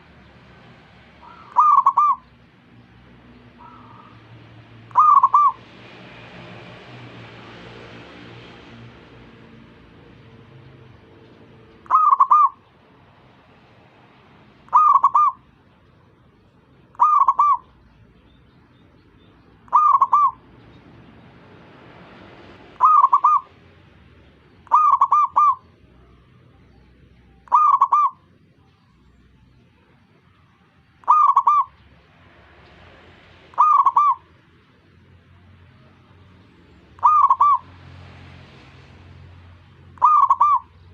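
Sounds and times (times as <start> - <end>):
dove cooing: 1.1 - 2.7, 3.5 - 5.7, 11.8 - 12.8, 14.6 - 18.2, 19.6 - 20.5, 22.7 - 23.6, 24.4 - 29.0, 29.6 - 32.1, 33.4 - 34.9, 36.9 - 37.8, 40.0 - 40.9.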